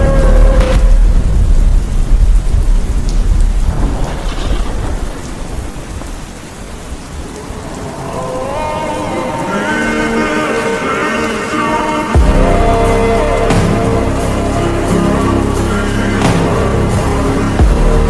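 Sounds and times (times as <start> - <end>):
loud low rumble: 0.0 - 6.2, 12.2 - 18.0
steady hiss: 0.0 - 18.0.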